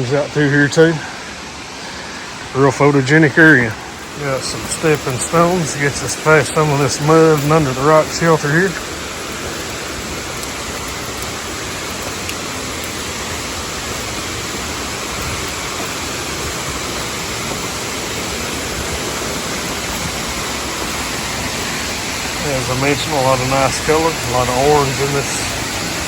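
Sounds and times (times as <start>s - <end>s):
waterfall roaring: 0.0s - 26.0s.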